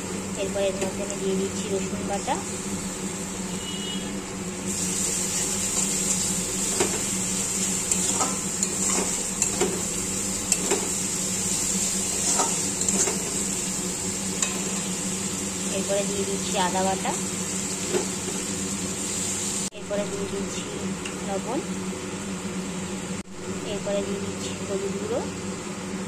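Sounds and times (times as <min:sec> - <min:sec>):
paste sizzling in oil: 0:04.6 - 0:19.7.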